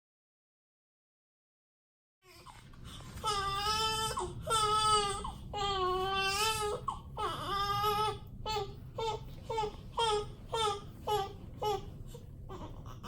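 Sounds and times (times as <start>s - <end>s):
newborn baby crying: 3.2s - 13.0s.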